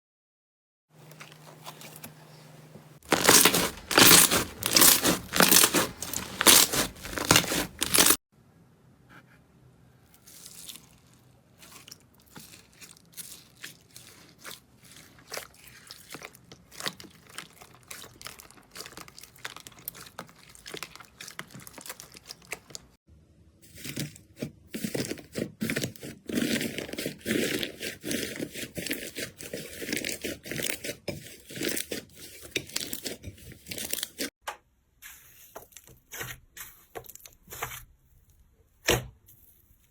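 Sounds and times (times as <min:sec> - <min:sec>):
slime crackling and crunching: 0:03.0 - 0:08.2, 0:10.2 - 0:23.0, 0:24.8 - 0:34.3.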